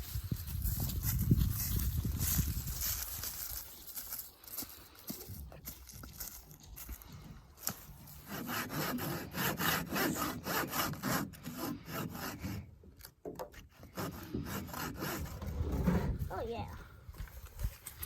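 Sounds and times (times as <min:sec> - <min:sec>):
hand saw cutting wood: 0:08.1 - 0:16.2.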